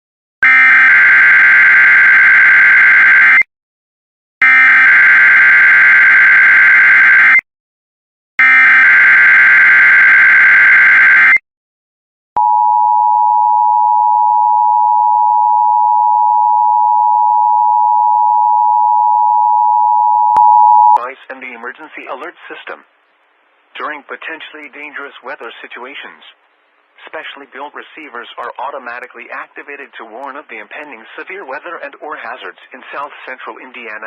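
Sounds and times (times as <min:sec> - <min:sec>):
steady attention signal tone: 0:12.4 - 0:21.0.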